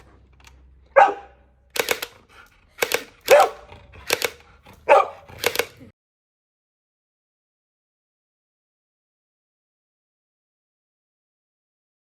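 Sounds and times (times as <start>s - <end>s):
dog barking: 0.9s - 1.4s, 3.2s - 3.7s, 4.8s - 5.4s.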